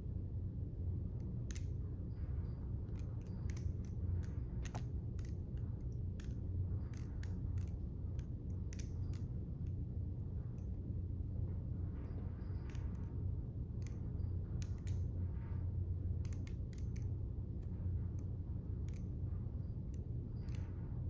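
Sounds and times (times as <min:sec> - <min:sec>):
balisong knife clicking: 0:16.2 - 0:17.1.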